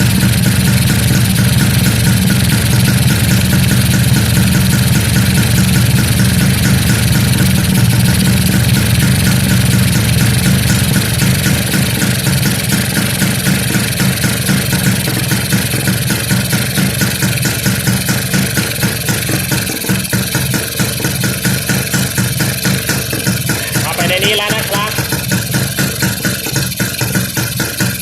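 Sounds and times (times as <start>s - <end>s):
two-stroke engine idling: 0.0s - 28.0s.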